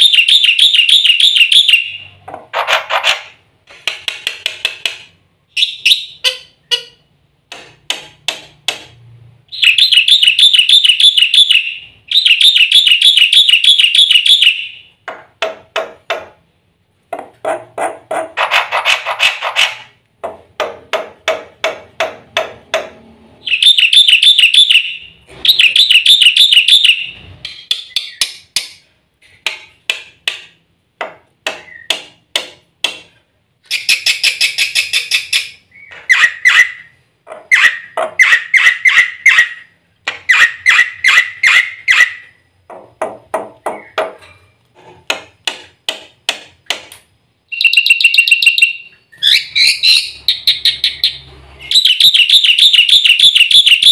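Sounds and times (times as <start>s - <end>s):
bird singing varied song: 0.0s - 2.2s, 5.5s - 7.0s, 9.5s - 15.0s, 23.4s - 28.6s, 31.6s - 32.0s, 33.6s - 42.4s, 47.5s - 53.9s.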